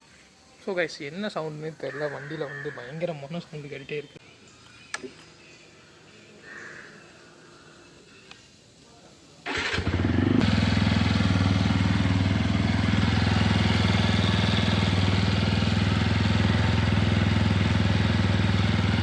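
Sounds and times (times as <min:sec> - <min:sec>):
motorcycle engine starting and running: 0:09.4 - 0:19.0.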